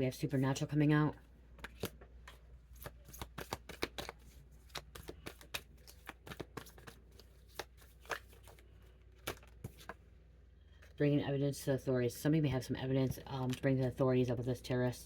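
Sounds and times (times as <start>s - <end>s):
cards being shuffled: 1.6s - 10.0s.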